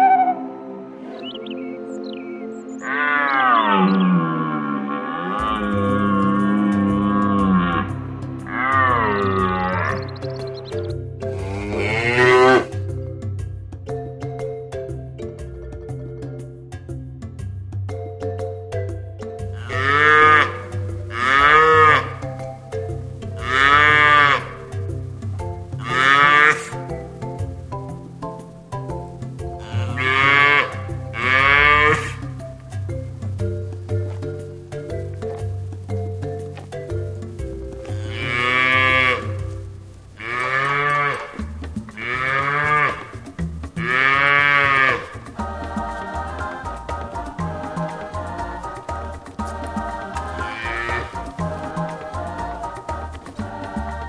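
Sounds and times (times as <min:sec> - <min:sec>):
background music: 0:00.0 - 0:54.0
cow mooing: 0:02.8 - 0:10.0, 0:11.3 - 0:12.7, 0:19.6 - 0:22.3, 0:23.4 - 0:24.9, 0:25.8 - 0:27.0, 0:29.6 - 0:32.4, 0:37.8 - 0:39.6, 0:40.2 - 0:43.2, 0:43.8 - 0:45.2, 0:50.2 - 0:51.3.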